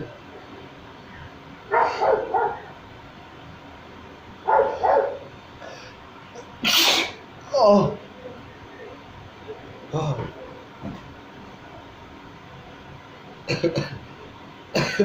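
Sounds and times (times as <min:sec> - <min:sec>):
dog barking: 0:01.7 - 0:02.7, 0:04.4 - 0:05.3.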